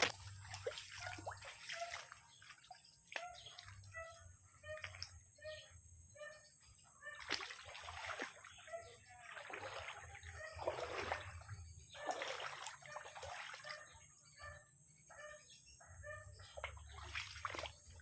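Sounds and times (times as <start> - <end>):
water splashing: 0.0 - 5.3, 7.0 - 13.9, 16.5 - 18.0.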